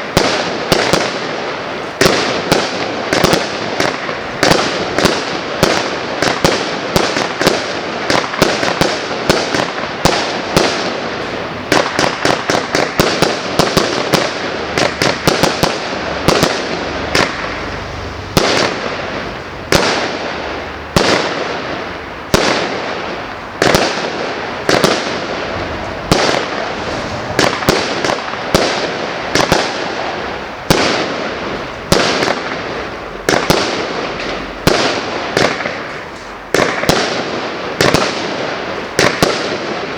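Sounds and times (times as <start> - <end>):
continuous fireworks hiss: 0.0 - 39.9
fireworks shots: 0.0 - 39.9.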